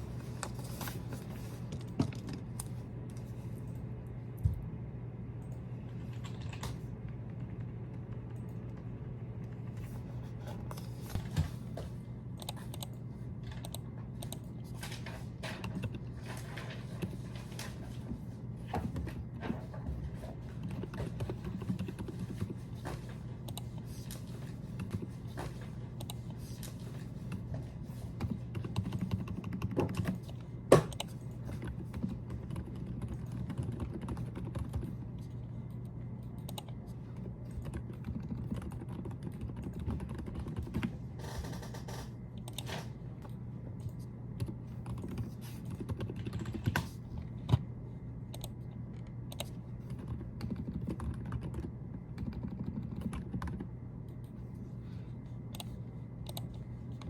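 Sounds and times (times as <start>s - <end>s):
steady low hum: 0.0s - 57.0s
typing on a keyboard: 13.6s - 14.6s, 20.6s - 27.5s, 28.2s - 36.8s, 37.5s - 42.7s, 44.4s - 47.6s, 49.3s - 54.3s, 55.5s - 57.0s.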